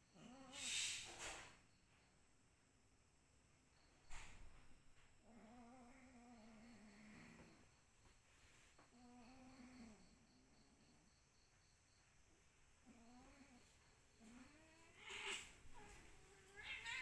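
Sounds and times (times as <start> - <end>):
cat yowling: 14.9 - 17.0.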